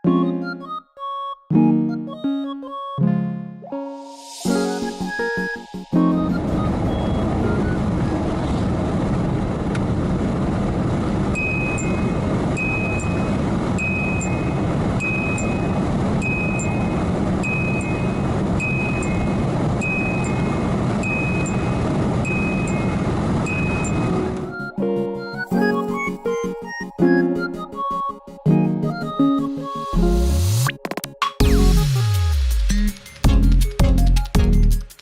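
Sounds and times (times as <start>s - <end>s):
road and engine noise: 6.1s - 24.8s
two-note car warning chime: 11.4s - 26.4s.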